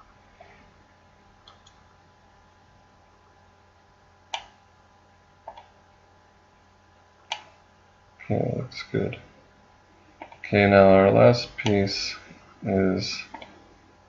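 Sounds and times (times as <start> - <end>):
faint steady hum: 0.0 - 14.0
computer mouse clicks: 1.4 - 1.8, 4.3 - 4.6, 5.4 - 5.7, 7.3 - 7.5, 10.2 - 10.4, 13.2 - 13.6.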